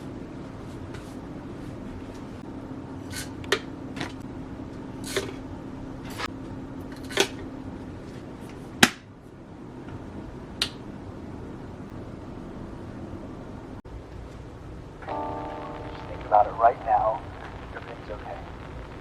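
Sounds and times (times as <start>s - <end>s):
steady low hum: 14.8s - 19.0s.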